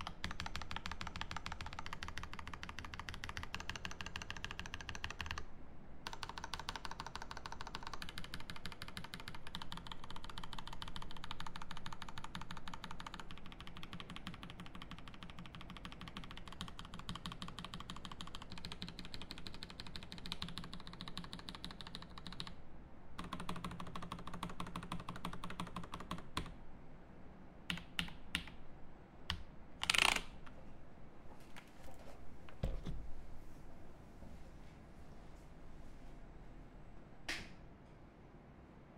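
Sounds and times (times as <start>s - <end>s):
mechanical keyboard typing: 0.0s - 5.4s, 6.1s - 22.6s, 23.2s - 26.5s, 27.7s - 28.6s, 29.3s - 30.3s.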